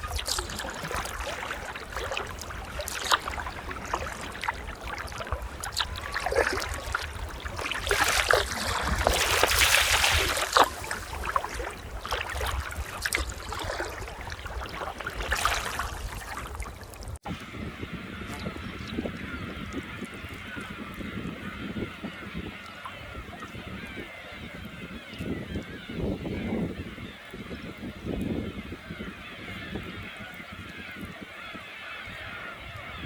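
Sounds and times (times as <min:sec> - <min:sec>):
paddle stroke splashes: 0:00.0 - 0:17.2
water lapping around kayak: 0:00.0 - 0:33.0.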